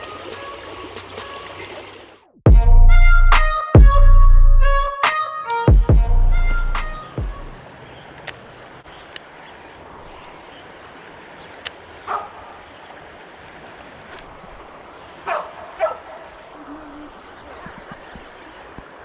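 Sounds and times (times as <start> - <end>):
creek water running: 0.0 - 2.3, 7.0 - 19.0
faint clicks: 11.5 - 11.8.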